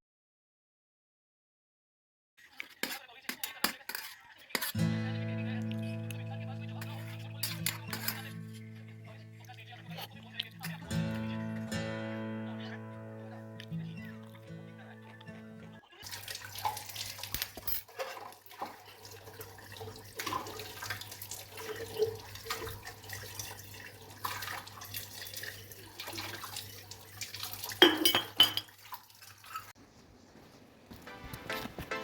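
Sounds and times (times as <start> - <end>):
water running and dripping: 16.0 - 29.8
household objects clinking: 27.8 - 28.8.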